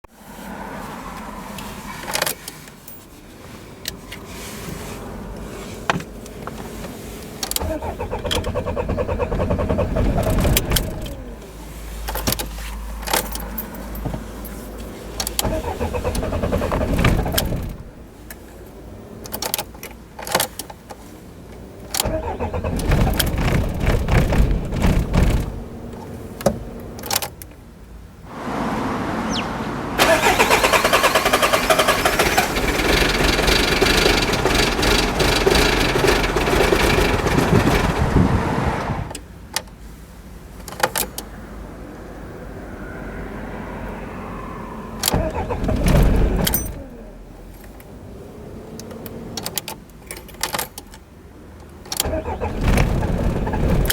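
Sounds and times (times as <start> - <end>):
diesel engine cranking on starter: 7.4 - 13.7, 15.1 - 18.1, 21.9 - 26.2, 28.3 - 39.2, 45.0 - 47.3, 51.9 - 53.9.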